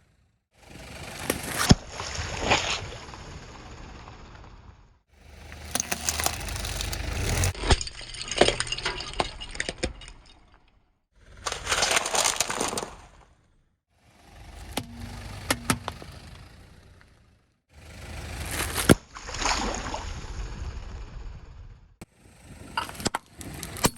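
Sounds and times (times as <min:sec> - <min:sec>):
tyre crushing objects: 0:05.6 - 0:07.6, 0:18.2 - 0:19.0.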